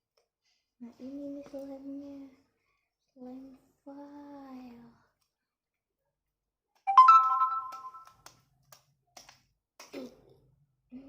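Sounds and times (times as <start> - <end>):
electronic chime: 6.9 - 8.1.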